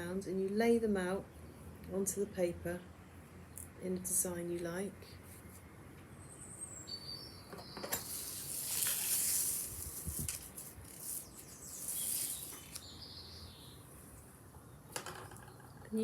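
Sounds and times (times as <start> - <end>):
paper and leaves rustling: 8.0 - 13.0
high bird chirps: 11.0 - 13.9.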